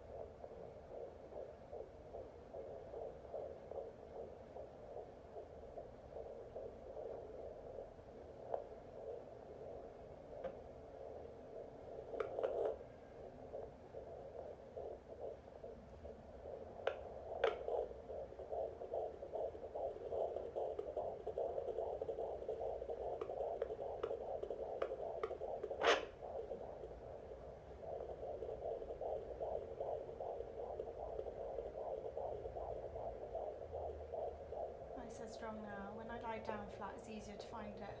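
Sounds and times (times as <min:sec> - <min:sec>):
whooshing heartbeat pulses: 0:00.0 - 0:37.3
probe clicks and knock: 0:12.0 - 0:12.8, 0:16.8 - 0:26.9.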